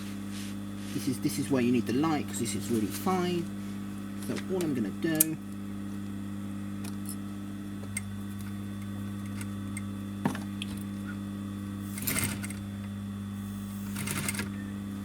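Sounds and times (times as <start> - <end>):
electrical hum: 0.0 - 15.0
sewing machine stitching: 11.8 - 12.6, 13.7 - 14.6.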